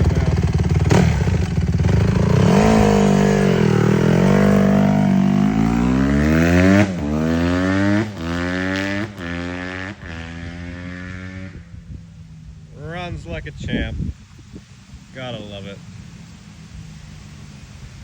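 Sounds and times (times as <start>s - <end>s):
dirt bike engine revving: 0.0s - 14.2s.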